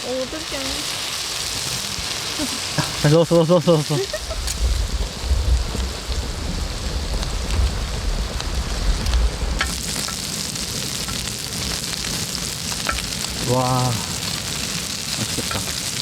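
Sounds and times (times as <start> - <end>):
meat sizzling in a hot pan: 0.0 - 16.0
low rumble: 4.1 - 9.7.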